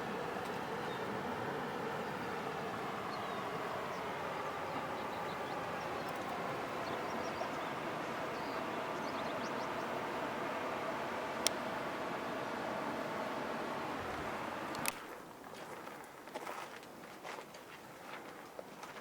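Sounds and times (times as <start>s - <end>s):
flowing creek water: 0.0s - 15.0s
faint bird chirps: 3.1s - 10.0s.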